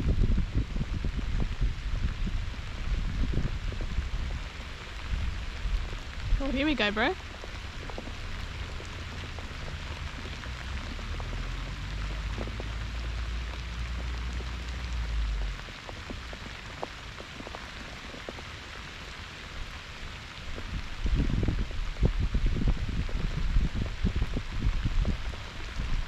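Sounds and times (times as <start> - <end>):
low rumble: 0.0 - 17.8
heavy rain falling: 0.0 - 26.0.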